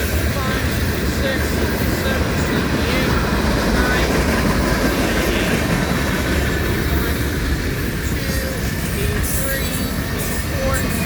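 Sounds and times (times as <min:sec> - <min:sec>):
freight train wheels rumbling on rails: 0:00.0 - 0:11.0.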